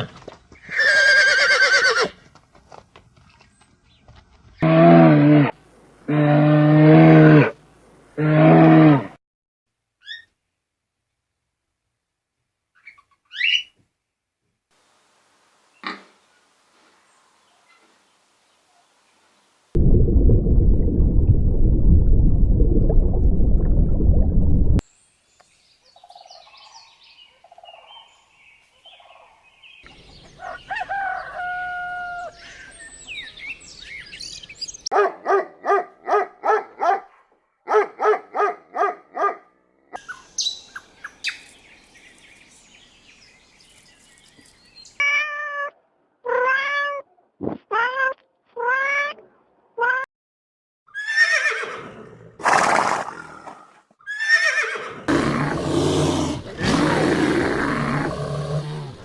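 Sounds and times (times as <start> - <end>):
loud rough low animal sound: 55.1 - 59.0.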